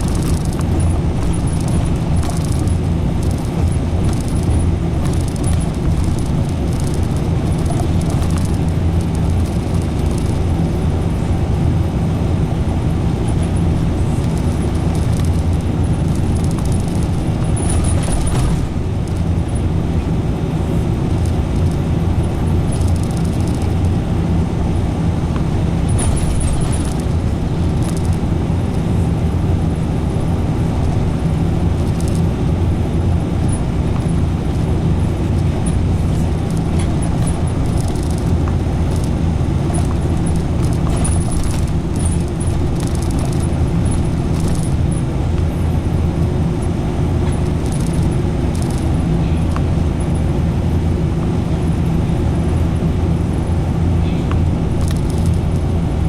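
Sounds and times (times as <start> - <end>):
bus engine and tyres droning: 0.0 - 56.0.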